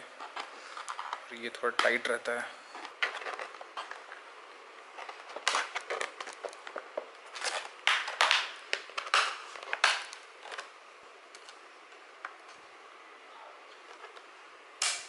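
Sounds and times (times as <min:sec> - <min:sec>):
plastic cover scraping: 0:02.6 - 0:10.7.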